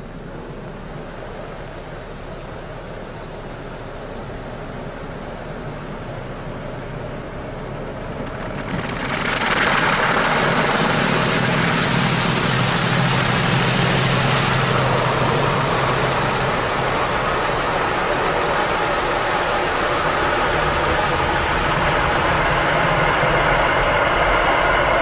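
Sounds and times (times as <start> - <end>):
car wash motor hum: 0.0 - 25.0
loud rushing hiss: 8.0 - 25.0.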